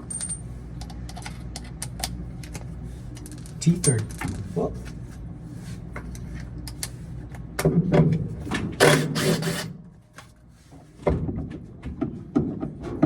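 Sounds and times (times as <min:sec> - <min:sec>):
clatter of tools and metal parts: 0:00.0 - 0:04.5.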